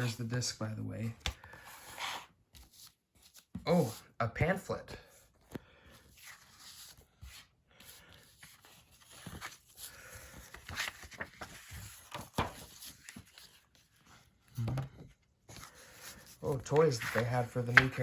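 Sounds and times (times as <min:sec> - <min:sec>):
paper rustling: 0:05.5 - 0:14.3, 0:15.5 - 0:18.0.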